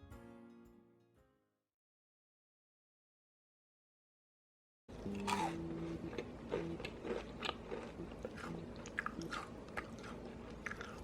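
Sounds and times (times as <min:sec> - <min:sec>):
cookie being chewed: 0:05.0 - 0:11.0.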